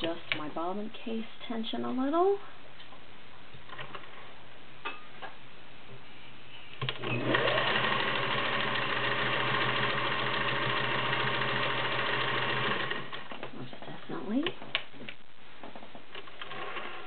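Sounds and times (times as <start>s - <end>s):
sewing machine running: 6.8s - 13.3s.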